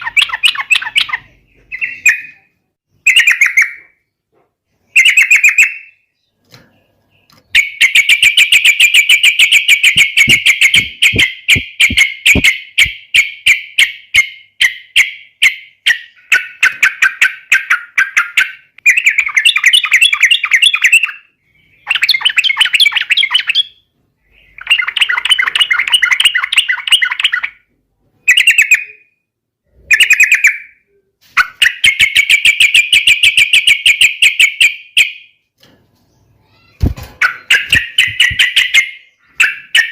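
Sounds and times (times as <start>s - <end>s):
bird singing chattering notes: 0.0s - 3.9s, 4.9s - 27.6s, 37.2s - 39.9s.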